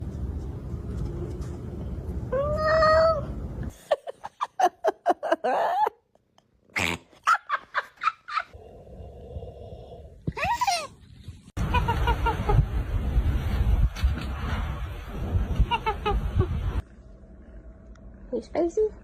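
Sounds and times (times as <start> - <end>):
low rumbling background: 14.6 - 19.0.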